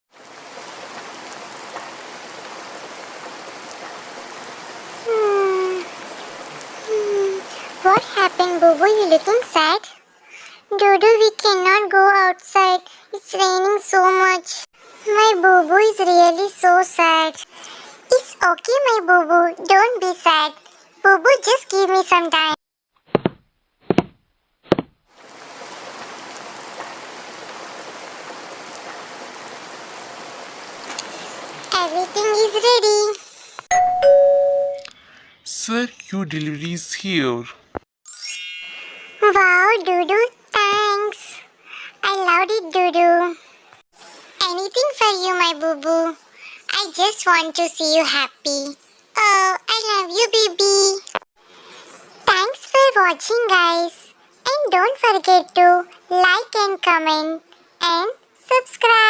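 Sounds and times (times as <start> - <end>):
rain falling: 0.1 - 9.8, 25.1 - 33.7.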